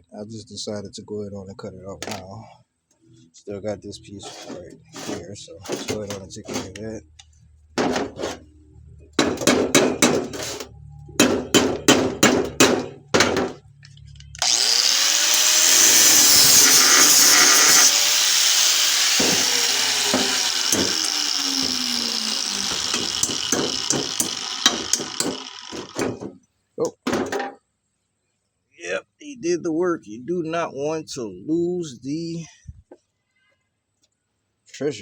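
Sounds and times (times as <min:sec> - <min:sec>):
angle grinder cutting steel: 0:04.2 - 0:06.8, 0:14.4 - 0:26.2.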